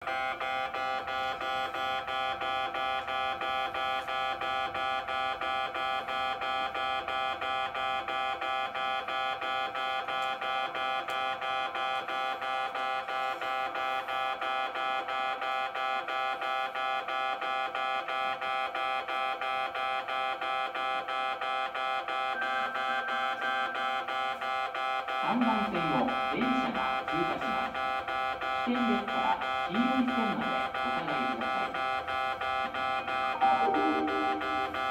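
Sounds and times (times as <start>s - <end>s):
steady electronic tone: 21.2s - 27.9s, 28.6s - 34.9s
level crossing warning bell: 21.8s - 34.9s.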